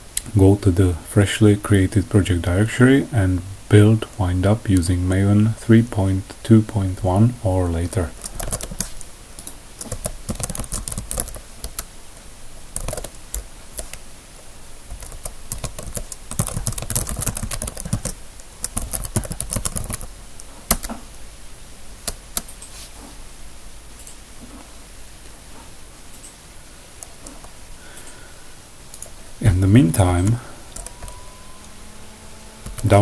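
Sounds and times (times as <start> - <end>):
typing on computer keyboard: 8.2 - 8.9, 9.8 - 11.9, 12.8 - 14.0, 14.9 - 20.1.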